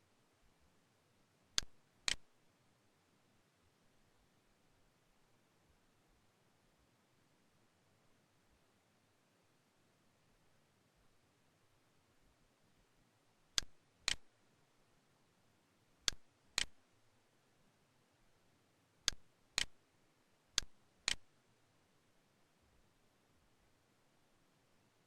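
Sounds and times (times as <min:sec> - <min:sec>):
mouse clicks: 0:01.6 - 0:02.3, 0:13.6 - 0:14.3, 0:16.0 - 0:16.8, 0:19.0 - 0:19.8, 0:20.6 - 0:21.3.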